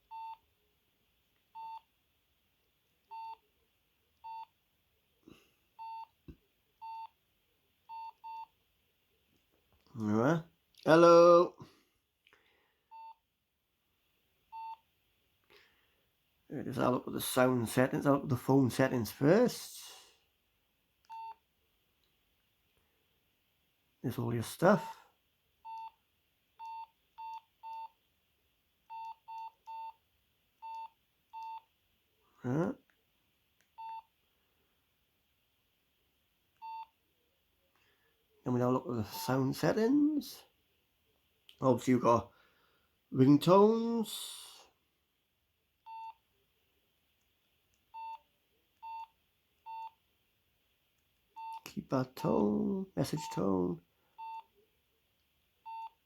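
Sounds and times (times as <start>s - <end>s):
phone keypad beeps: 30.6s - 31.6s, 45.9s - 46.2s, 47.9s - 48.2s, 48.8s - 49.1s, 54.2s - 54.5s, 55.7s - 56.0s.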